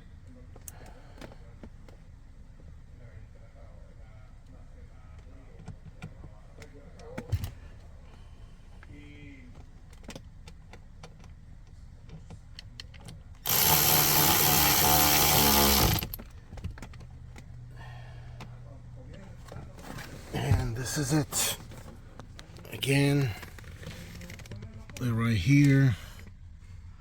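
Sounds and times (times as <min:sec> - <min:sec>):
power screwdriver running: 0:13.4 - 0:16.2.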